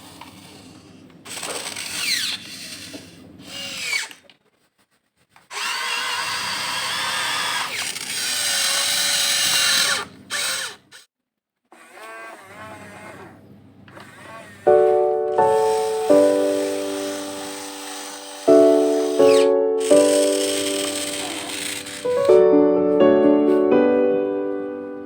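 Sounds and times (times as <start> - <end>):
toy excavator motors whining: 0.0 - 4.5, 5.4 - 11.1, 11.7 - 22.4
background music: 14.7 - 25.0.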